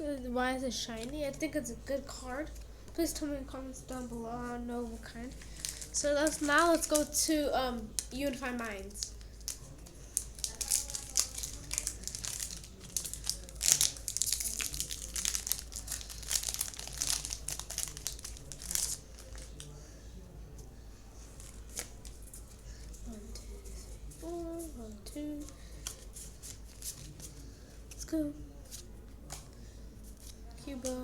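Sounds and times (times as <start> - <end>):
foil wrapper crinkling and tearing: 5.3 - 7.2, 8.9 - 19.7.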